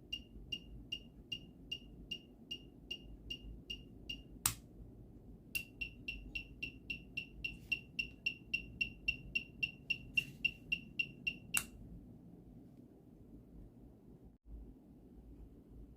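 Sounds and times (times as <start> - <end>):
turn indicator buzzer beeping: 0.0 - 4.4, 5.6 - 11.7
sharp switch click: 4.4 - 4.6.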